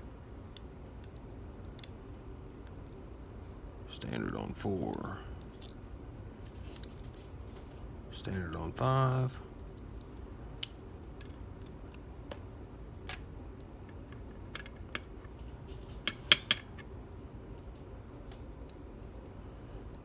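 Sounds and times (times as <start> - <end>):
metal lock pins clicking: 14.0 - 15.1.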